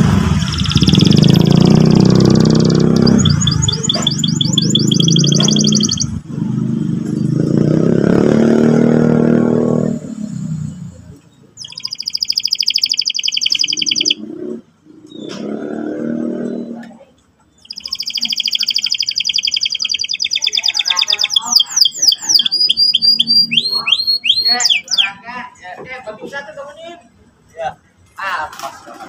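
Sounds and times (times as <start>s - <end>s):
canary singing trills: 0.0s - 6.2s, 11.4s - 15.7s, 17.4s - 25.3s.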